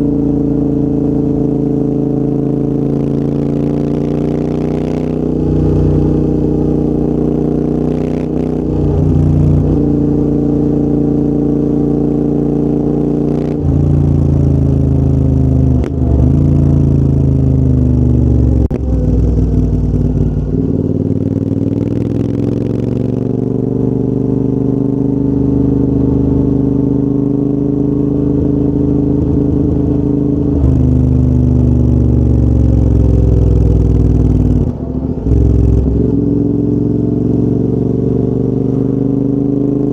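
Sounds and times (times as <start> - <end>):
motorcycle engine: 0.0 - 39.9.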